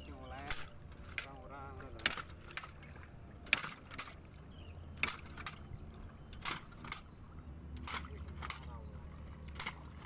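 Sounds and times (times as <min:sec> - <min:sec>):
low steady rumble: 0:00.0 - 0:10.0
planting tool metallic clacks: 0:03.5 - 0:04.2, 0:05.0 - 0:05.6.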